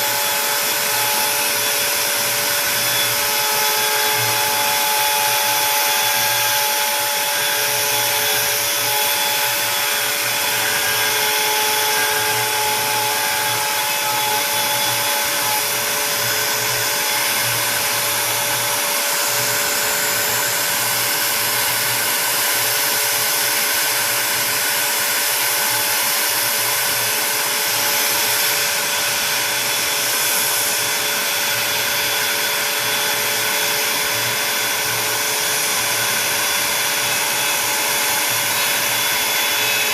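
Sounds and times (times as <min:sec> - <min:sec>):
router spindle motor whine: 0:00.0 - 0:39.9.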